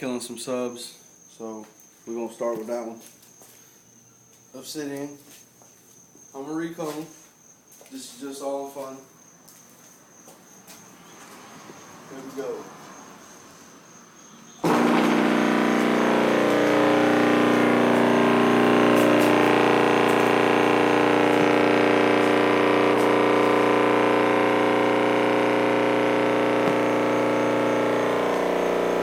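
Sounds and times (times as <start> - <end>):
subwoofer buzzing loudly: 14.6 - 29.0.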